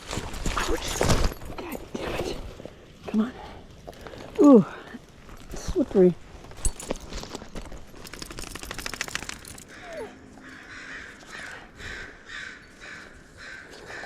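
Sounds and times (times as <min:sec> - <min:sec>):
clicks and crackles: 0:06.6 - 0:09.8
crow cawing: 0:09.7 - 0:14.0.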